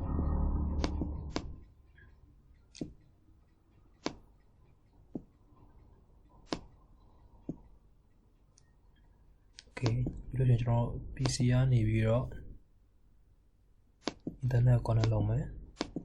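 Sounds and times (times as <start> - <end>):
low rumble: 0.0 - 1.7.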